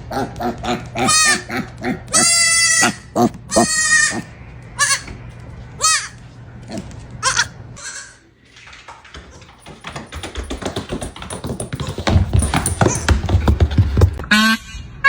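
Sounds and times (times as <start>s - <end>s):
farm animal bleating: 0.7s - 8.3s
taps and knocks: 8.7s - 14.2s.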